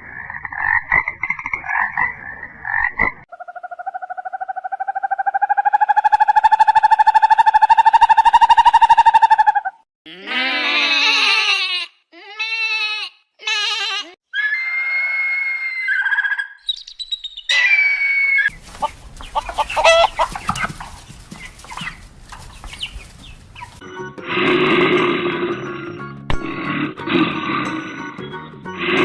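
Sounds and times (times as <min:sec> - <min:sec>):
chirping: 0:16.0 - 0:23.8.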